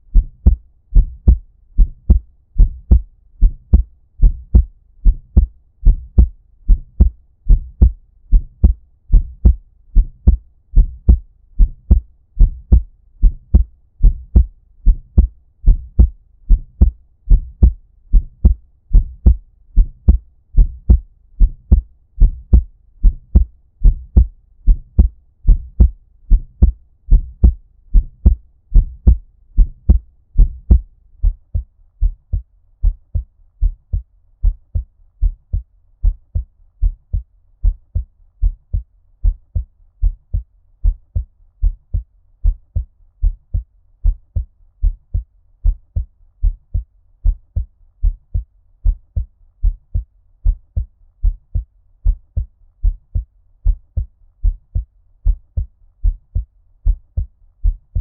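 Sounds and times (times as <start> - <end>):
muffled heartbeat thumps: 0.1 - 58.0.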